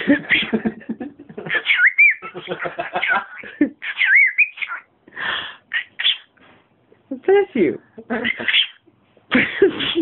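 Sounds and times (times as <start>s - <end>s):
bird mimicking speech: 1.5s - 2.3s, 3.0s - 4.9s, 5.7s - 6.3s, 8.2s - 8.8s.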